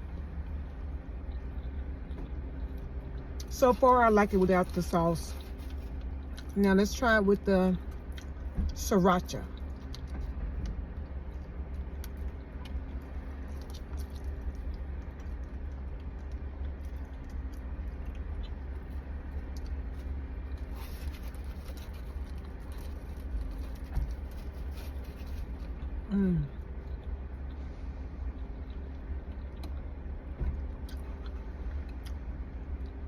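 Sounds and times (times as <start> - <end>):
steady low hum: 0.0 - 33.0
food being handled and eaten: 0.1 - 8.7, 9.4 - 27.7.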